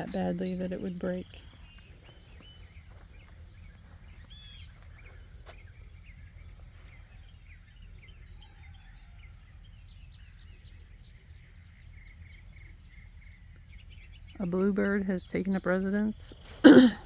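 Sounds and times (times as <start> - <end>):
steady low rumble: 0.0 - 16.6
songbirds chirping: 0.0 - 17.0.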